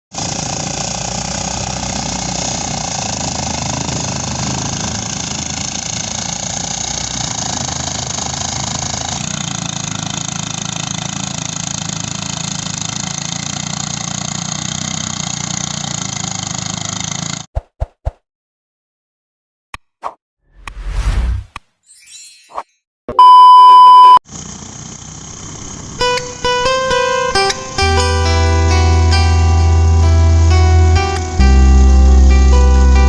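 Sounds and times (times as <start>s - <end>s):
threshing machine engine running: 0.2s - 17.4s, 24.3s - 33.0s.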